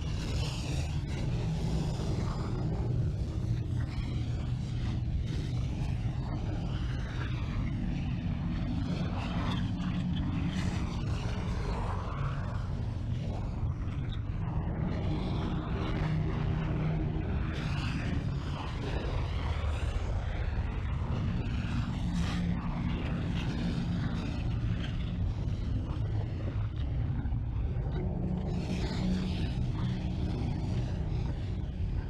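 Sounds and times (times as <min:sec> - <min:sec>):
low rumble: 0:00.0 - 0:32.0.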